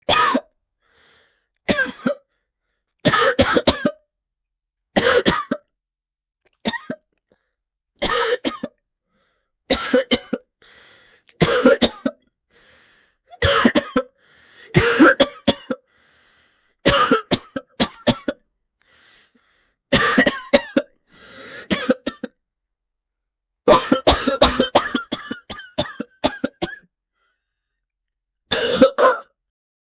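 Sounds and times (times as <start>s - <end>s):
man coughing: 11.4s - 12.2s, 13.4s - 14.1s, 14.8s - 15.8s, 16.9s - 18.4s, 19.9s - 20.9s, 21.7s - 22.3s, 23.7s - 26.8s, 28.5s - 29.3s.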